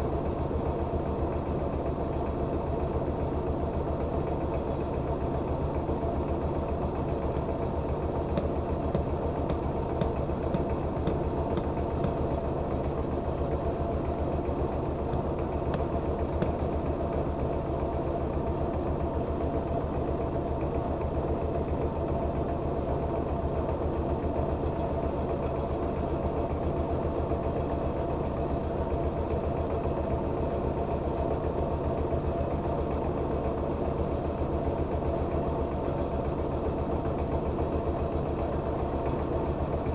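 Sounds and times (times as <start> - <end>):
rice milling machine running: 0.0 - 22.2.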